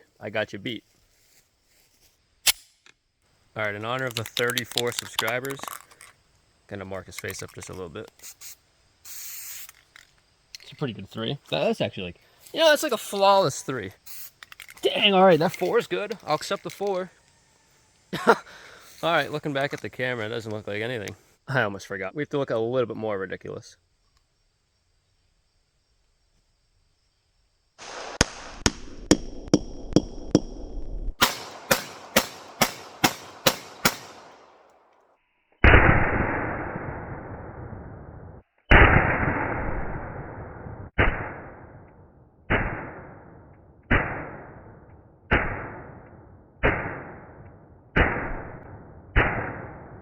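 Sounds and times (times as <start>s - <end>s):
sharp gunshots: 27.8s - 29.3s, 31.2s - 34.6s, 35.6s - 37.3s, 38.7s - 41.9s, 42.5s - 50.0s
heavy dull gunshots: 31.2s - 34.6s.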